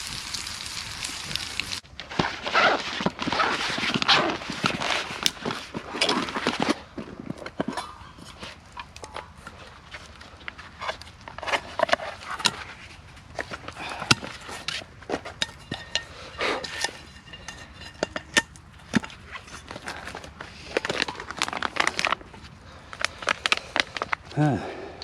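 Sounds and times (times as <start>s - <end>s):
utensil clinking on metal pan: 14.0s - 19.8s.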